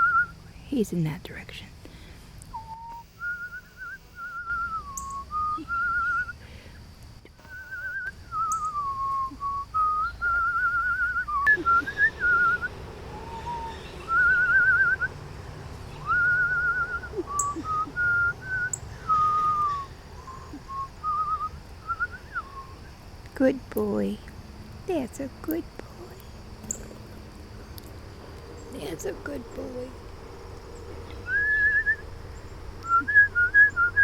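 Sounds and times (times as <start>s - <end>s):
person whistling: 2.6s - 6.4s, 7.4s - 15.1s, 16.0s - 22.8s, 31.2s - 32.0s, 32.8s - 34.0s.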